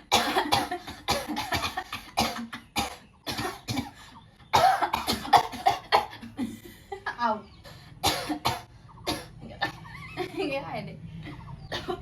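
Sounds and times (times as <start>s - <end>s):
person coughing: 0.1s - 6.3s.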